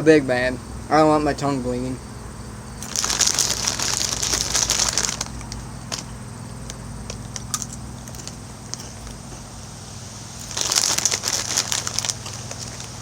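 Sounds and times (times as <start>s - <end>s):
snack bag crinkling: 2.8s - 13.0s.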